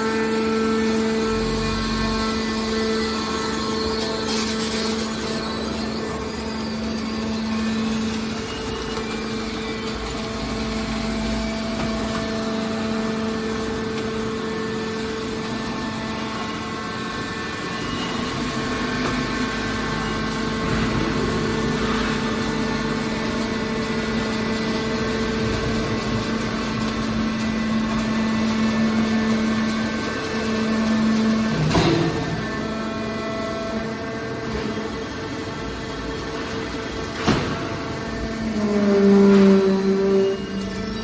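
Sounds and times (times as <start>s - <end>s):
hydraulic power unit droning: 0.0s - 41.0s.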